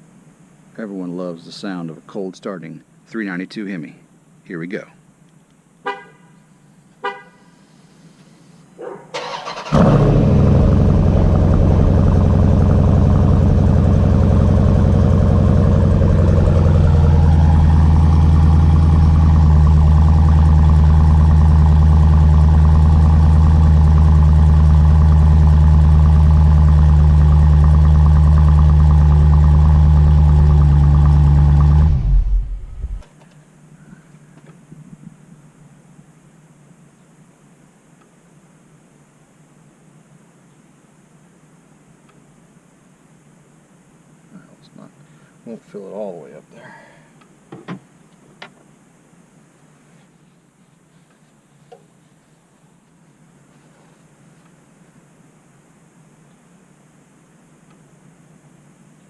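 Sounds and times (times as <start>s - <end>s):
car engine starting and idling: 9.2s - 33.1s.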